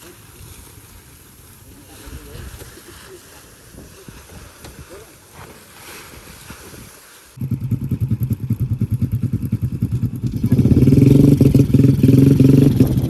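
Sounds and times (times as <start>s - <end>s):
diesel engine running: 7.4s - 13.0s.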